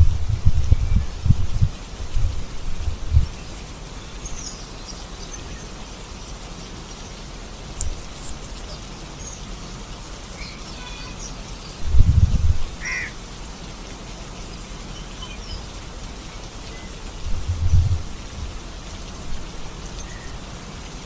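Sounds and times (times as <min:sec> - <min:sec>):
rain hiss: 0:00.0 - 0:21.0
bird calling: 0:07.8 - 0:11.8, 0:12.7 - 0:13.2.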